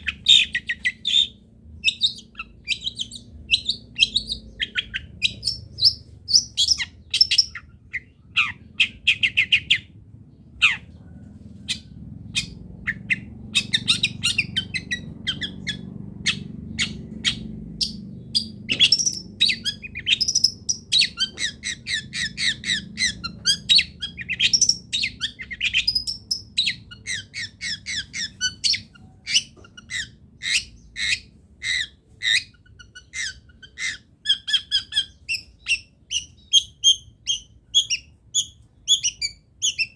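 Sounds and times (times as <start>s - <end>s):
bird squawking: 0.0s - 9.9s, 10.6s - 39.9s
shrike chattering song: 11.6s - 39.9s.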